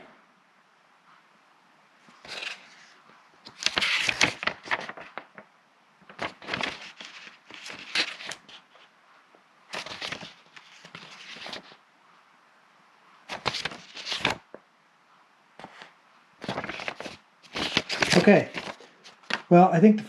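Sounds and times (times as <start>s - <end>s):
packaging crinkling: 16.4s - 19.5s.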